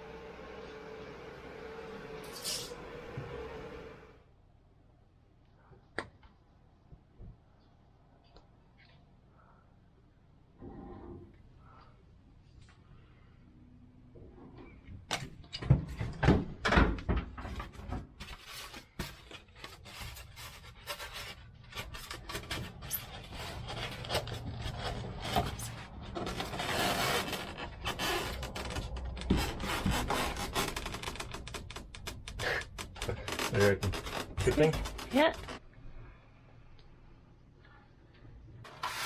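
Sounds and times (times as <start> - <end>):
scraping and rubbing: 17.6 - 35.6, 38.7 - 39.0.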